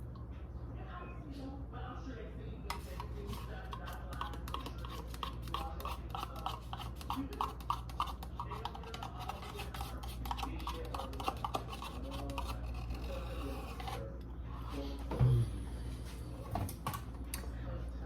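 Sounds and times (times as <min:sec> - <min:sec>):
utensils clicking and scraping: 0:02.7 - 0:14.1.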